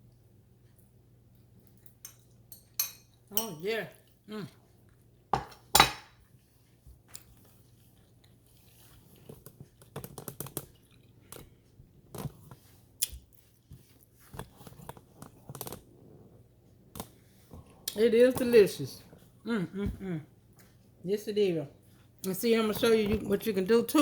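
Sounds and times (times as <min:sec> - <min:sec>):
person chewing food: 0:00.6 - 0:03.3, 0:03.9 - 0:05.3, 0:06.2 - 0:18.0.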